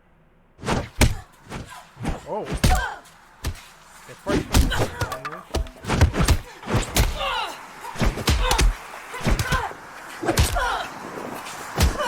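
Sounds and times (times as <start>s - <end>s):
fighters grunting: 1.1s - 3.0s.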